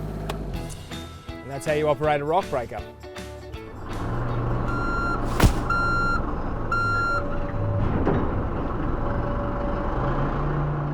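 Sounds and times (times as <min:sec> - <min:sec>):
excavator engine running: 0:03.7 - 0:10.8
travel alarm beeping: 0:04.7 - 0:07.5
sharp knock: 0:05.3 - 0:05.8.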